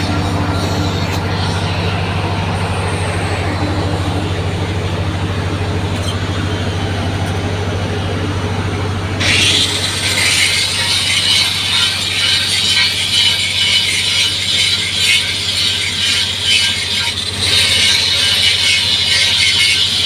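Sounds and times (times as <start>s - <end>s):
grinder cutting metal: 0.0s - 4.4s, 9.2s - 20.0s
angle grinder humming: 0.0s - 20.0s.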